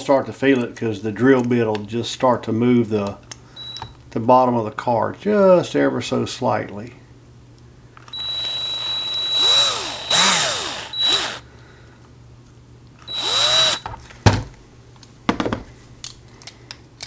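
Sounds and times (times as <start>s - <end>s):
small power drill drilling metal: 8.0s - 11.5s, 13.1s - 14.0s.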